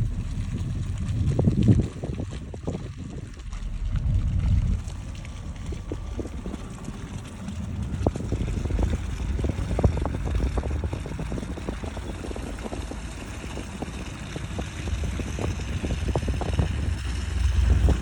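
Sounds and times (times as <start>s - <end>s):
crackles and clicks: 0.0s - 18.0s
vehicle low rumble: 0.0s - 18.0s.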